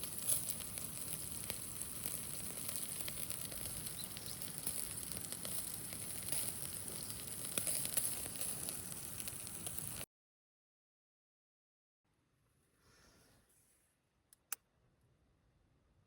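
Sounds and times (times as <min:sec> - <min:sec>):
food sizzling on a grill: 0:00.0 - 0:10.1.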